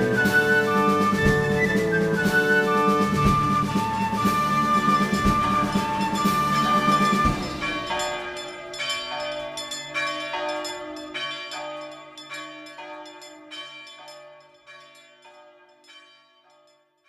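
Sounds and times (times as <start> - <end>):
bell chimes melody: 5.6 - 16.6.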